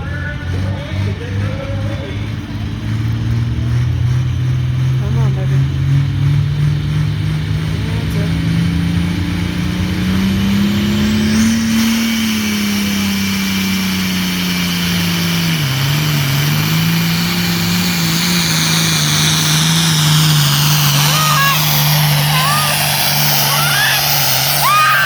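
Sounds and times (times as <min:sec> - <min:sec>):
tractor engine running hard: 0:00.0 - 0:25.0
high whine: 0:15.5 - 0:25.0.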